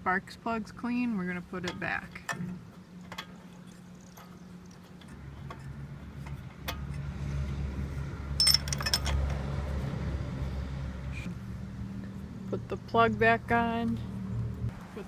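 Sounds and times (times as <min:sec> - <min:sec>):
wrench clinking on metal: 0:08.4 - 0:09.3.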